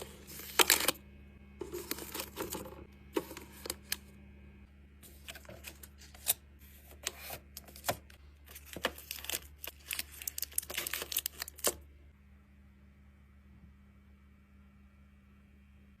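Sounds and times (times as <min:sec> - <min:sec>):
packaging crinkling: 0:00.0 - 0:01.0, 0:01.6 - 0:04.0, 0:05.0 - 0:11.8.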